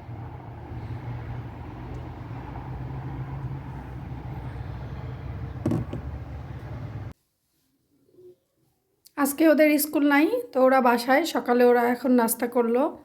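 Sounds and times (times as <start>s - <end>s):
low mechanical hum: 0.0s - 7.1s
knock: 5.6s - 6.2s.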